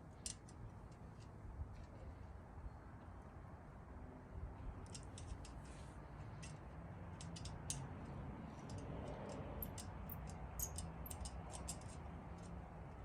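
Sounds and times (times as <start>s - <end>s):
small screws clicking on metal: 4.8s - 5.7s, 6.3s - 13.0s.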